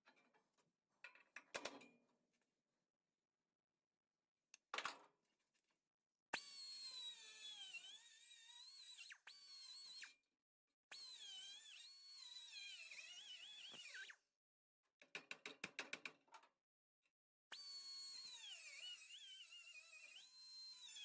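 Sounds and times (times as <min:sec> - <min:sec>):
power tool whining cutting metal: 0:06.4 - 0:10.1, 0:10.9 - 0:14.2, 0:17.5 - 0:21.0.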